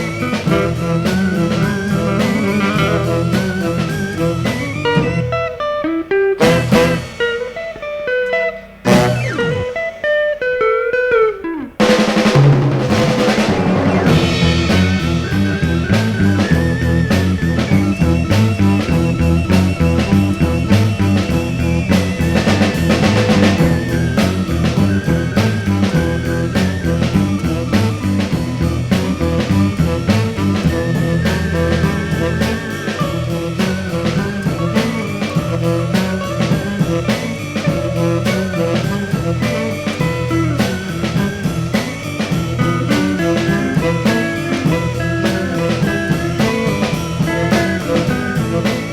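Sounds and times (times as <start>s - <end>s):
beat band instrumental: 0.0s - 48.9s
accented drum hits: 6.4s - 8.2s, 11.8s - 48.9s.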